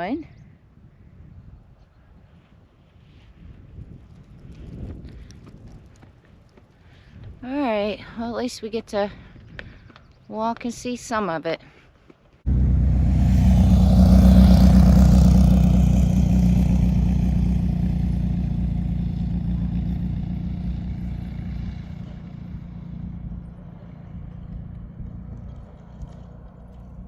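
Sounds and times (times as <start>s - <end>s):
vehicle driving past: 12.5s - 27.0s.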